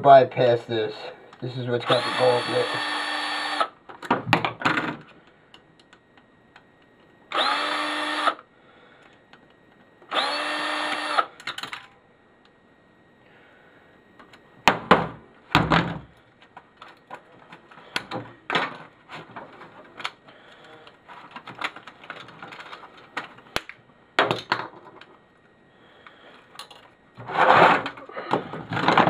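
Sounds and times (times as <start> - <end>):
plastic parts knocking and rattling: 16.8 - 20.2, 21.1 - 23.4, 27.5 - 29.0.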